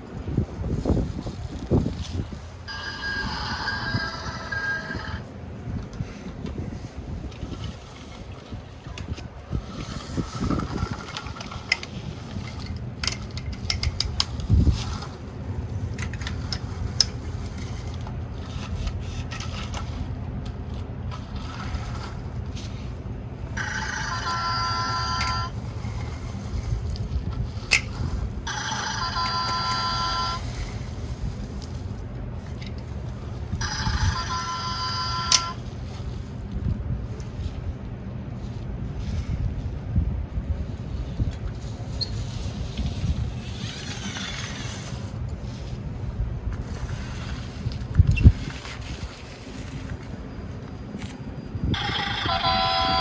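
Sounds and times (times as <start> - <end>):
wind buffeting microphone: 0.0 - 23.6, 25.5 - 28.5, 35.6 - 53.0
toy truck ringing tone pattern: 2.7 - 5.3, 23.6 - 25.6, 28.5 - 30.6, 33.6 - 35.6, 51.7 - 53.0.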